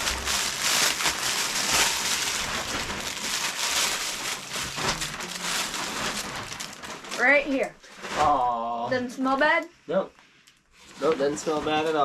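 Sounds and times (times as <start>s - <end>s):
wrapping rustling and crinkling: 0.0s - 12.0s.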